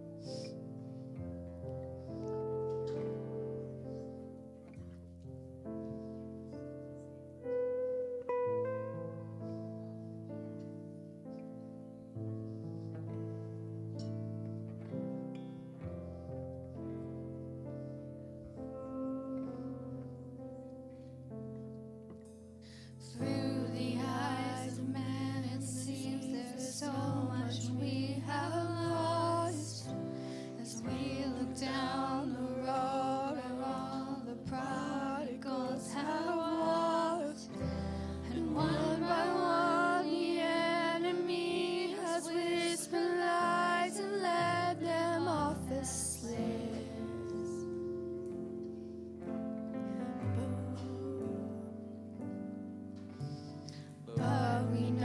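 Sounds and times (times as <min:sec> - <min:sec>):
person singing: 0:22.8 - 0:52.1, 0:53.8 - 0:55.0.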